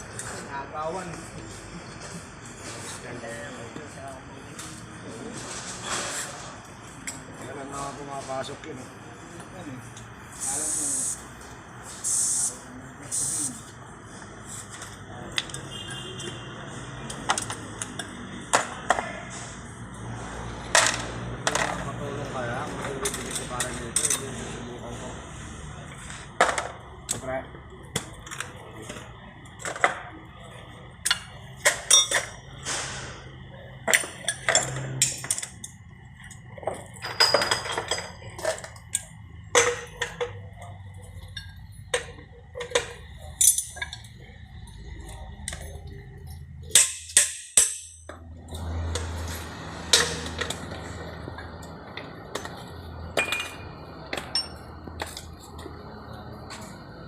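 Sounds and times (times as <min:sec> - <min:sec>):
hand tools clinking on metal: 0:22.8 - 0:24.5, 0:31.0 - 0:32.4, 0:33.9 - 0:51.7, 0:52.3 - 0:55.7.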